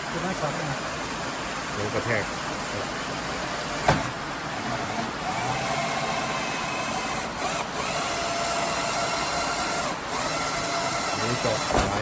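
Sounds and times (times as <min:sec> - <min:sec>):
heavy rain hiss: 0:00.0 - 0:12.0
electric drill whining: 0:05.2 - 0:12.0.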